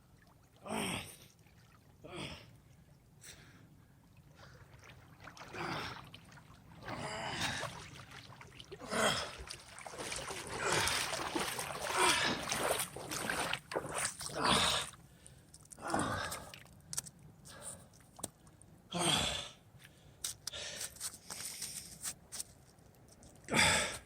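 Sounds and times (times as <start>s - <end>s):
water splashing: 4.3s - 15.0s
swimmer gasping breaths: 8.8s - 12.8s.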